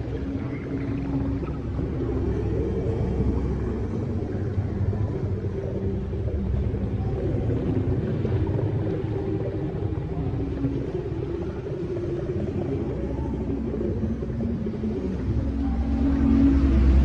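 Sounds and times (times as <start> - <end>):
deep rumble: 0.0 - 17.0
long low shifting tones: 0.0 - 17.0.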